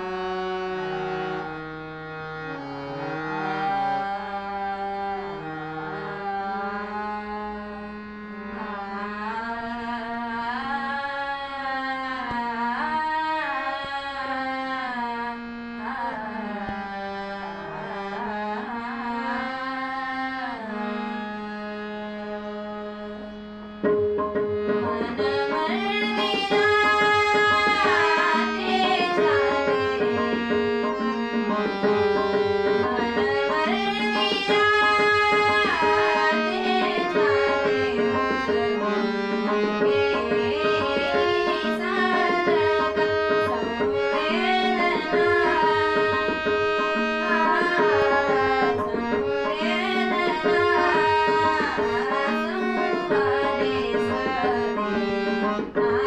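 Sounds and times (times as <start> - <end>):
tabla: 0.0 - 56.0
woman singing: 8.5 - 17.0, 18.1 - 21.5, 24.7 - 30.5, 32.8 - 39.0, 40.2 - 56.0.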